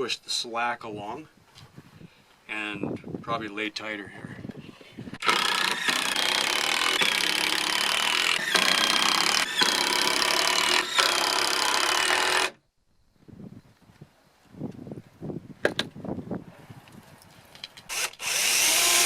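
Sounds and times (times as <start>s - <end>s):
power drill drilling into wood: 5.2s - 12.6s, 17.9s - 19.0s.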